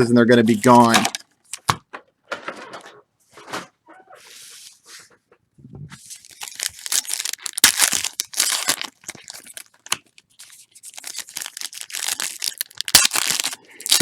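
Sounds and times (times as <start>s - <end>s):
packaging tearing and crinkling: 6.0s - 14.0s.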